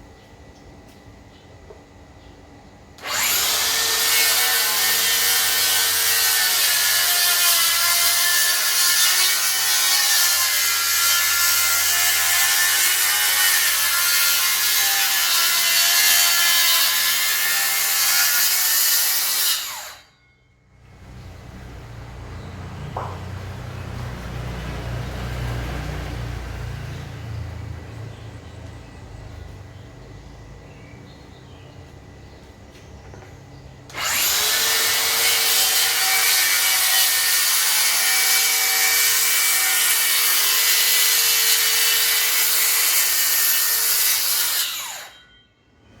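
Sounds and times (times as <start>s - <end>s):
circular saw cutting wood: 3.0s - 20.2s, 33.9s - 45.3s.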